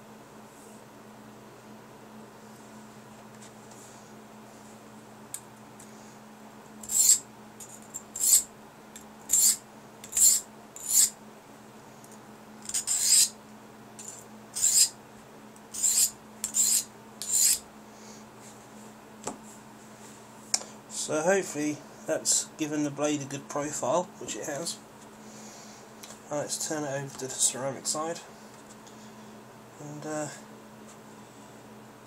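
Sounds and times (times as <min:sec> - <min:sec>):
knife strokes on whetstone: 0:06.8 - 0:07.2, 0:08.2 - 0:08.4, 0:09.3 - 0:11.2, 0:12.7 - 0:13.3, 0:14.0 - 0:14.9, 0:15.7 - 0:17.6.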